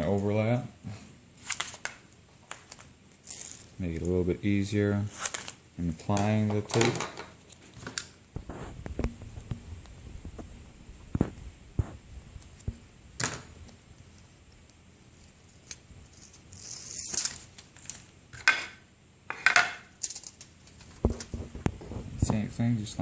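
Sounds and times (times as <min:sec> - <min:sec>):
tape rustling: 0:01.4 - 0:04.2, 0:05.0 - 0:10.5, 0:13.6 - 0:18.5.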